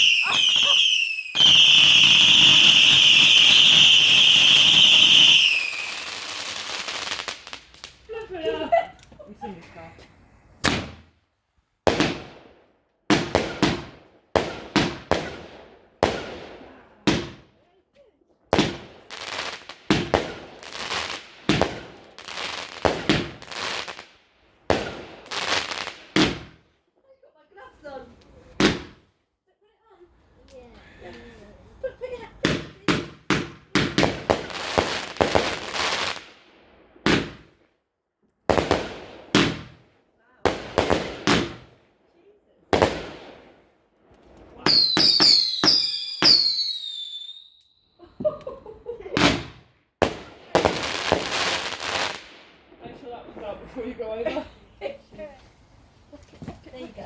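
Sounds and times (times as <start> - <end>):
fireworks bangs with echo: 0.0 - 7.9, 10.6 - 11.1, 11.8 - 17.6, 18.5 - 26.6, 28.5 - 29.1, 32.4 - 36.4, 37.0 - 37.6, 38.5 - 41.8, 42.7 - 43.6, 44.6 - 47.1, 49.1 - 53.6.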